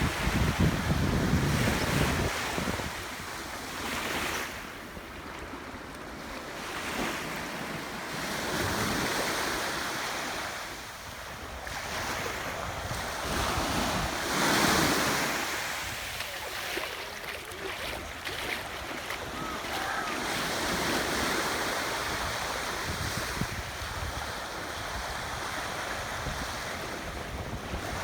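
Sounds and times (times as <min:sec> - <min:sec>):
wind buffeting microphone: 0:00.0 - 0:03.3
ocean surf breaking on beach: 0:00.0 - 0:28.0.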